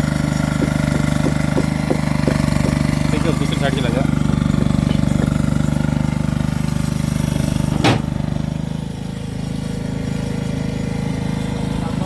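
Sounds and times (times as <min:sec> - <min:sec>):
engine running with pulsing beat: 0:00.0 - 0:12.0.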